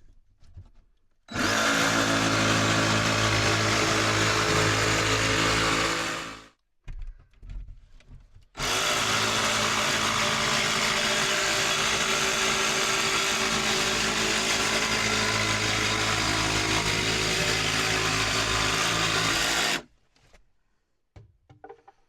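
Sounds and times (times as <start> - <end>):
handheld power tool cutting wall: 1.3 - 6.5, 8.6 - 19.9.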